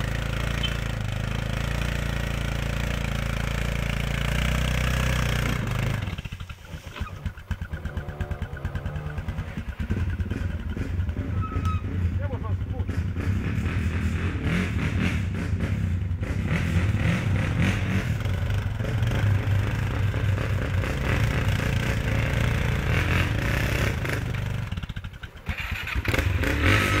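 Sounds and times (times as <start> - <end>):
atv engine running: 0.0 - 27.0.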